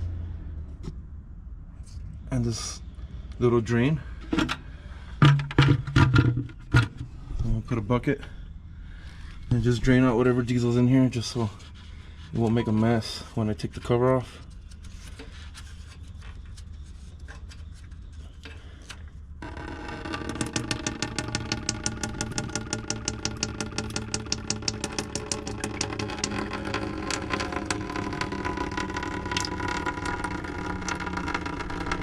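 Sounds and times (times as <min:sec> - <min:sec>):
diesel draining into bucket: 0:04.2 - 0:07.2, 0:19.5 - 0:32.0.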